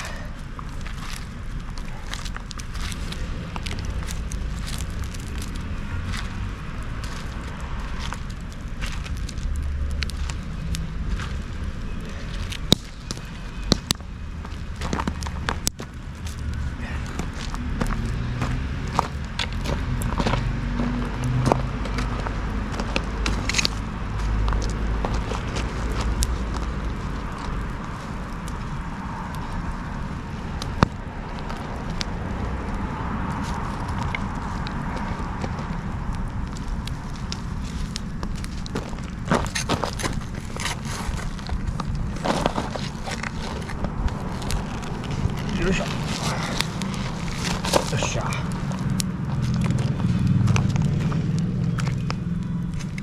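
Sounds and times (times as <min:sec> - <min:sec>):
low steady rumble: 0:00.0 - 0:25.1
bonfire crackling: 0:00.0 - 0:53.0
fire popping: 0:00.0 - 0:53.0
sharp pops of fire: 0:11.2 - 0:23.8.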